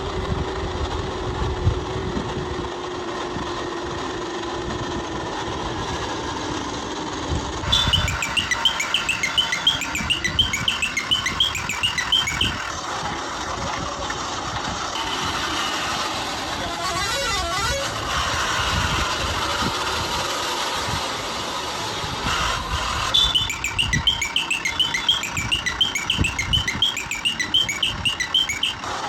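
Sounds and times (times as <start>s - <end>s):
high chirping blips: 7.7s - 12.8s, 23.2s - 28.8s.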